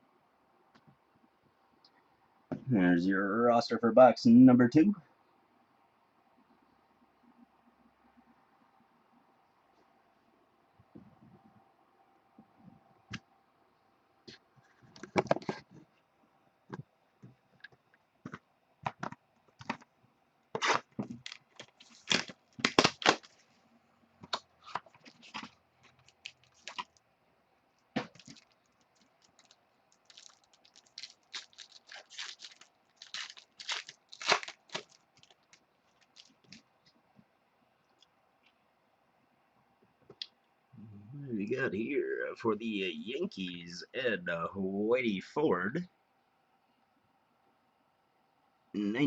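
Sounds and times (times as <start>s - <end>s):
card packs being opened: 20.6s - 23.4s, 24.3s - 27.0s, 28.0s - 36.6s
cardboard and wrapper crackling: 20.6s - 23.5s, 24.3s - 27.0s, 28.0s - 36.6s.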